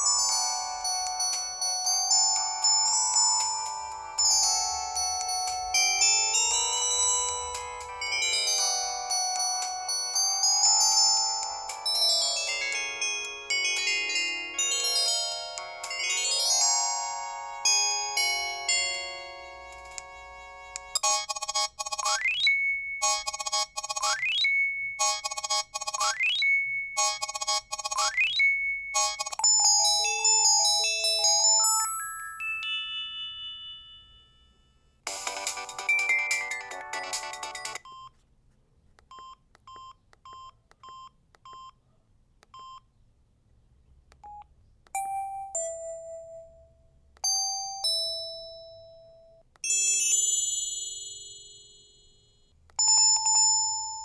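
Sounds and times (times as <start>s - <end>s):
ringtone with rising sweep: 0.0s - 34.1s, 35.1s - 37.8s.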